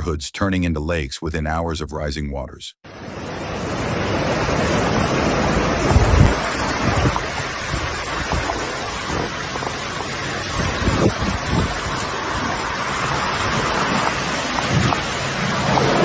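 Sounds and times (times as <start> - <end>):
rushing floodwater: 2.9 - 16.0
wind buffeting microphone: 4.3 - 16.0.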